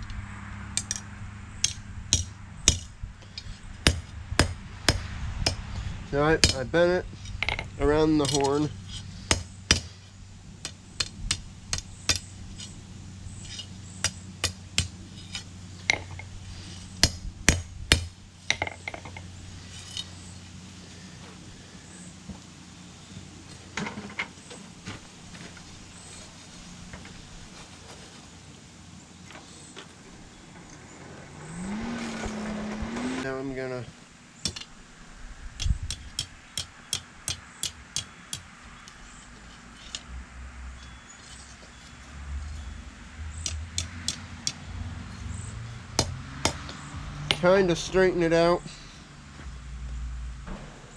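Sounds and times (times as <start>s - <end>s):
steady low hum: 0.0s - 41.0s, 42.4s - 50.9s
hammer striking metal on anvil: 1.6s - 2.9s, 6.4s - 6.6s, 9.3s - 9.9s, 17.0s - 19.0s
small metal clinks: 7.2s - 9.1s.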